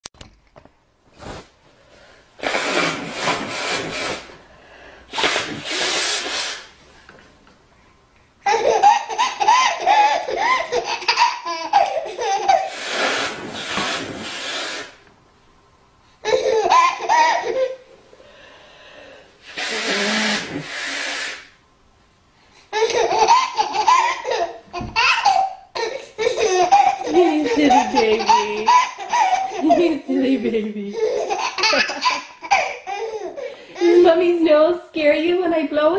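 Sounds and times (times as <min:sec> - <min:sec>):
woman blowing her nose: 0:02.4 - 0:06.8, 0:12.5 - 0:15.0, 0:19.4 - 0:21.6, 0:25.9 - 0:30.0
baby laughing: 0:08.4 - 0:13.4, 0:16.2 - 0:17.8, 0:22.7 - 0:34.2.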